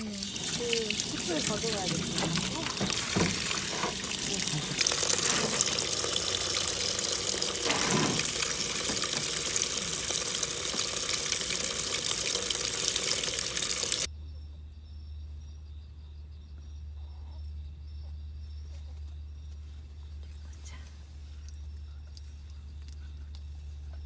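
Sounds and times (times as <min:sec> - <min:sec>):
water running into a sink: 0:00.0 - 0:14.1.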